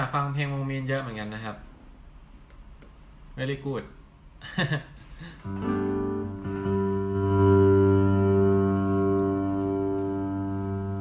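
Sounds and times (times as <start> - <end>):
amplified chords ringing: 5.5 - 11.0.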